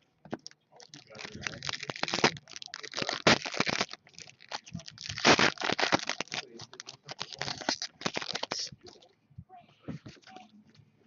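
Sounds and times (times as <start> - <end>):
card pack wrappers crinkling and tearing: 0.8 - 9.0
cards rustling: 0.9 - 9.0.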